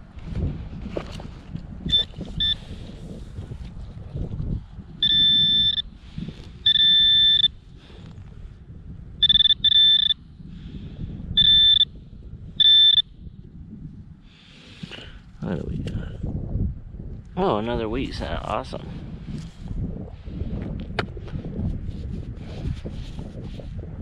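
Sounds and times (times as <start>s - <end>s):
metal detector beeps: 1.9s - 2.7s, 5.0s - 6.0s, 6.6s - 7.6s, 9.2s - 10.2s, 11.4s - 11.9s, 12.6s - 13.1s.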